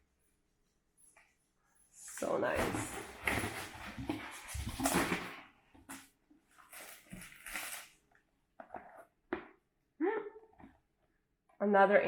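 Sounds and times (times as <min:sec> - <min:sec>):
packaging rustling: 0:02.6 - 0:08.1.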